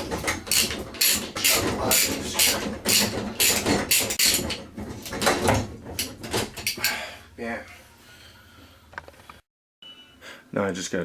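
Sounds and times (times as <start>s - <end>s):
pipe cutter ratchet rasping: 0.3s - 4.6s.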